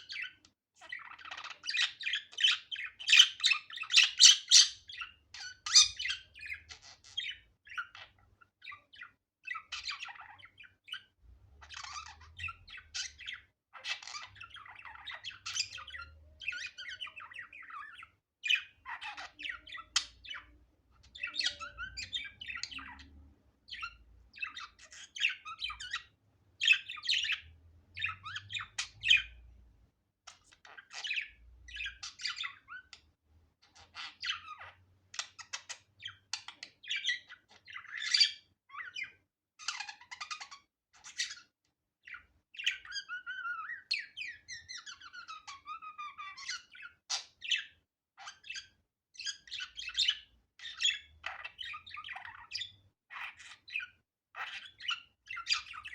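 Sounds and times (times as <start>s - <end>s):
budgerigar chattering and warbling: 0.0s - 29.4s, 42.1s - 55.9s.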